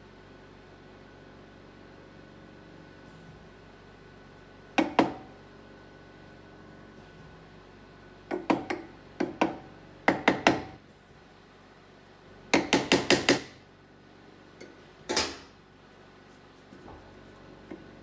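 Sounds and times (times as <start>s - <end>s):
small hammer tapping on metal: 8.3s - 10.8s, 12.5s - 13.6s.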